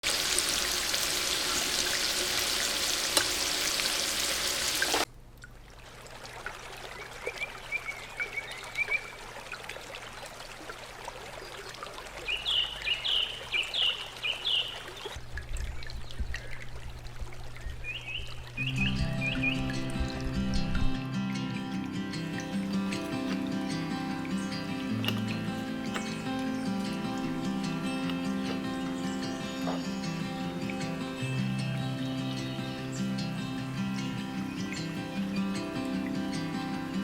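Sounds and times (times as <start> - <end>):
small birds chirping: 12.3 - 15.2, 17.6 - 35.8.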